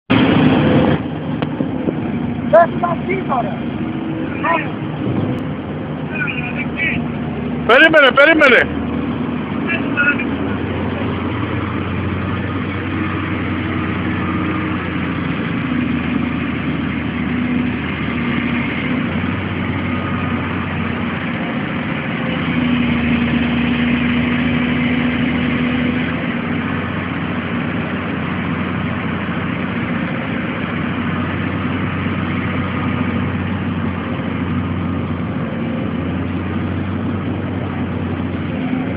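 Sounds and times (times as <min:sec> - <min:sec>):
excavator diesel engine running: 0:00.1 - 0:38.9.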